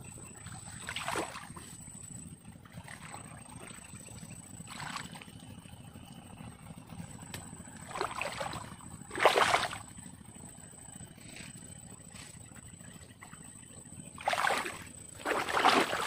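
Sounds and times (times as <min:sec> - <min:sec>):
water splashing and sloshing: 0:00.1 - 0:16.0
low wash of water: 0:14.2 - 0:16.0.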